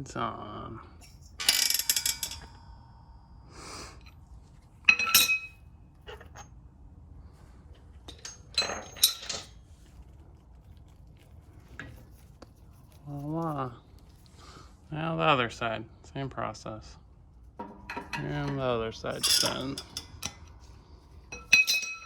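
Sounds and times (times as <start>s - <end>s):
steel tools clinking and clanking: 1.0s - 2.6s, 4.8s - 6.5s, 8.0s - 10.1s, 17.6s - 22.0s.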